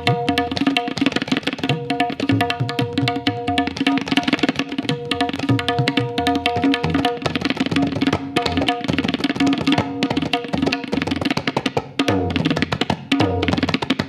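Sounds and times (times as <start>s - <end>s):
tabla bass drum notes: 0.0s - 14.0s
tabla treble drum strokes: 0.0s - 14.0s.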